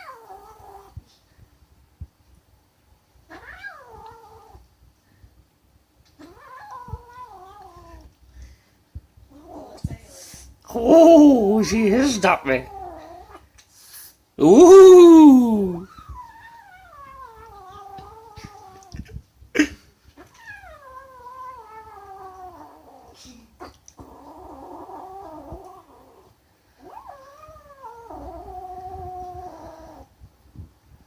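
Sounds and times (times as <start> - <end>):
kitten growling yowls: 10.7 - 13.0, 14.4 - 18.5.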